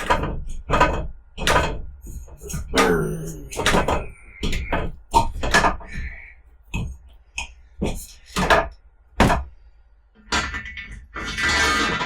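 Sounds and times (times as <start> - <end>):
knocks and clunks: 0.0 - 7.2.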